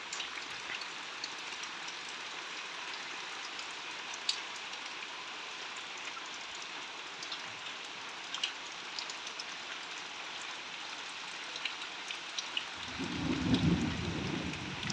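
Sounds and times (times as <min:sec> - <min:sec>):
raindrops ticking close by: 0:00.0 - 0:14.9
heavy rain hiss: 0:12.8 - 0:14.9.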